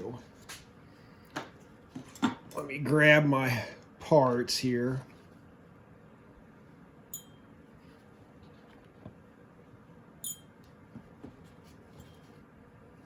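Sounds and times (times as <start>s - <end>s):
light metallic clinks: 7.1s - 7.5s, 10.2s - 10.6s.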